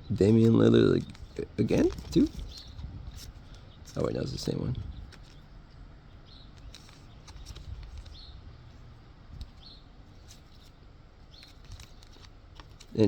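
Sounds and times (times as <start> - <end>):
low outdoor rumble: 0.0 - 13.0
bird chirping: 6.1 - 7.3, 8.0 - 8.7, 9.5 - 11.6.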